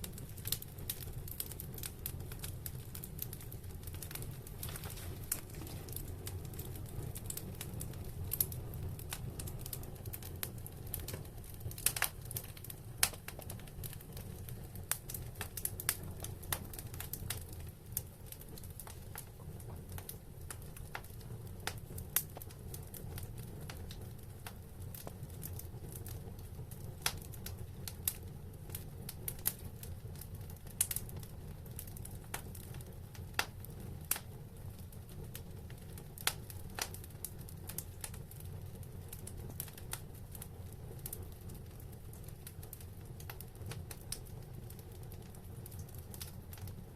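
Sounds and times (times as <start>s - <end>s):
fire crackling and popping: 0.0s - 46.9s
fire low rumble: 0.0s - 46.9s.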